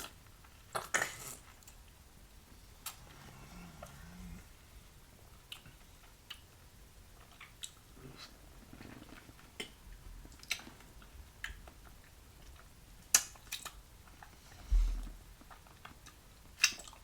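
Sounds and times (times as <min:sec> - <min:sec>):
chewing juicy fruit: 0:05.3 - 0:17.0
wet mouth clicks and smacks: 0:16.6 - 0:17.0.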